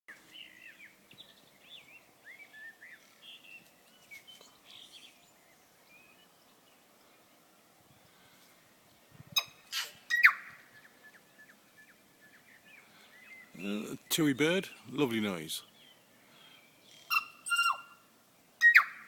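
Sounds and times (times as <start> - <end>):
bird whistling song: 9.4 - 13.6, 15.8 - 18.0, 18.6 - 19.0.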